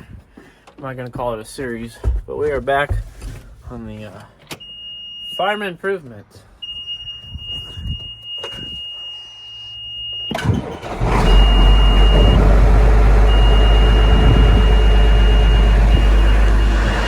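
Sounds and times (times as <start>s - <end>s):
diesel tractor engine: 10.4s - 17.0s
high warning beep: 13.3s - 17.0s.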